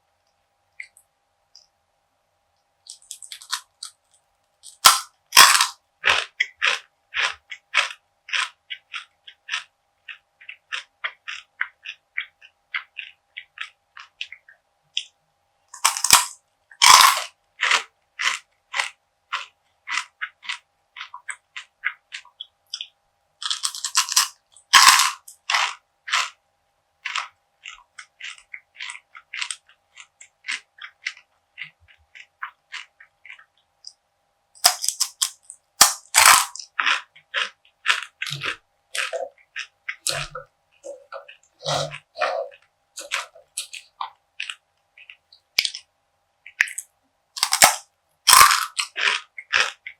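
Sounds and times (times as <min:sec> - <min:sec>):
crunchy chewing: 0:02.8 - 0:26.4, 0:27.0 - 0:34.0, 0:34.6 - 0:49.9
crunchy bites into seed bar: 0:04.6 - 0:09.7, 0:15.8 - 0:20.6, 0:23.4 - 0:26.4, 0:34.6 - 0:40.4, 0:47.4 - 0:49.8.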